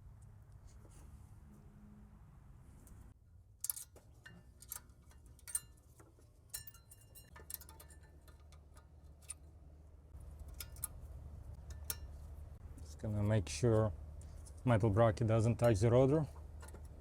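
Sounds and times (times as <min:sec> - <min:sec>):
metal brake parts clinking: 0:03.6 - 0:09.4, 0:10.2 - 0:12.4.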